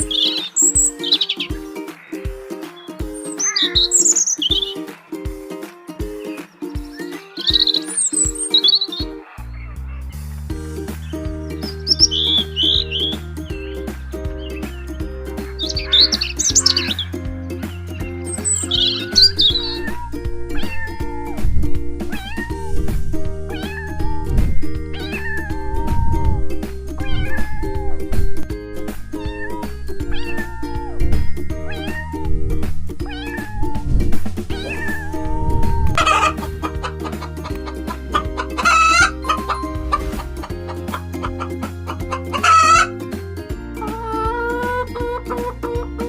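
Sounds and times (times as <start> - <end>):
background music with steady beat: 0.0 - 46.0
high-pitched animal calls: 3.2 - 4.8, 11.7 - 13.2, 15.5 - 17.2, 18.3 - 21.4, 23.5 - 24.4, 25.0 - 26.4, 27.0 - 28.1, 29.1 - 32.4, 33.0 - 33.8, 34.5 - 42.9
cat meowing: 3.4 - 4.6, 19.5 - 21.4, 22.1 - 22.8, 23.5 - 26.4, 27.0 - 28.1, 29.1 - 32.4, 33.0 - 33.9, 34.5 - 36.4.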